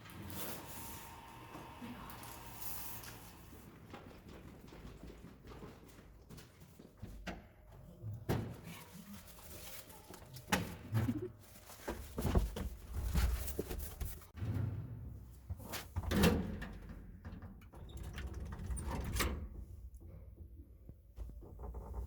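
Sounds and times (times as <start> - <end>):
parcels knocking and thudding: 10.7 - 14.3.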